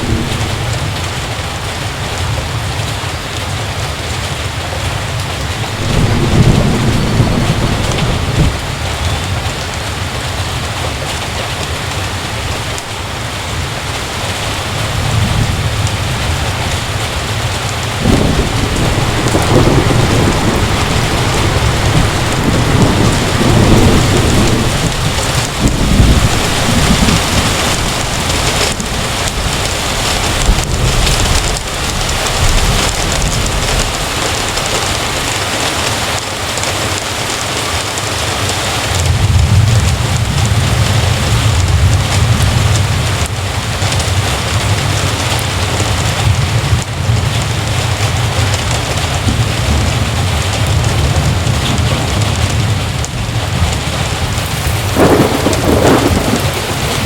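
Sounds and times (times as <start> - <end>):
heavy rain pouring: 0.0 - 57.0
rolling thunder: 0.0 - 57.0.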